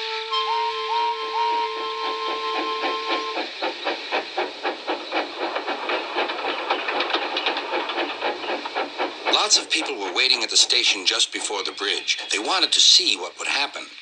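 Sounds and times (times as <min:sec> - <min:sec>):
steam hissing: 0:00.0 - 0:14.0
steam locomotive chuffing: 0:00.0 - 0:14.0.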